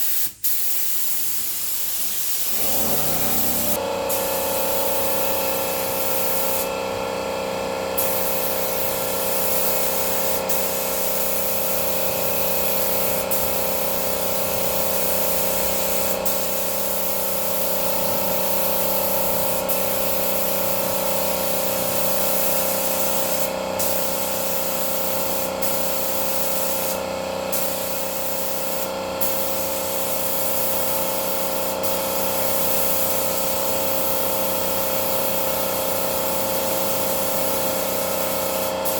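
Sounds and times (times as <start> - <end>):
paint spray gun hissing: 0.0 - 6.7, 8.0 - 38.9
steady hum: 2.5 - 4.1.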